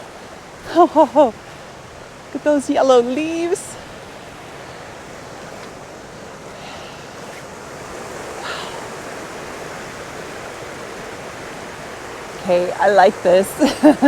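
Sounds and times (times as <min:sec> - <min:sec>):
waterfall and creek rushing: 0:00.0 - 0:14.0.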